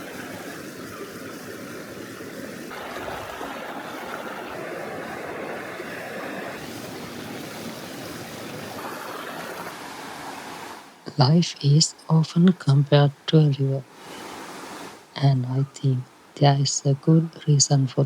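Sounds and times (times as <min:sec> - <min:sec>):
river water rushing: 0:00.0 - 0:11.1, 0:13.8 - 0:15.2.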